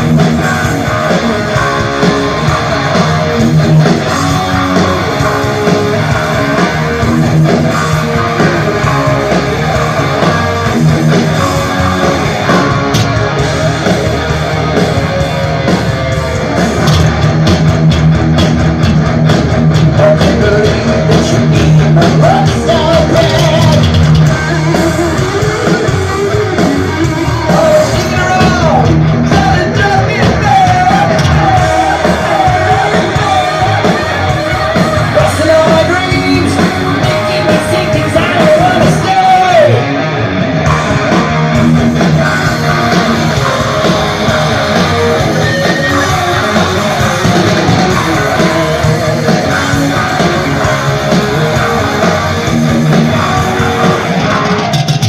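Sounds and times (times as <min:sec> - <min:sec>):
heavy metal band playing live: 0:00.0 - 0:55.0
person singing: 0:19.9 - 0:39.9, 0:41.9 - 0:54.7.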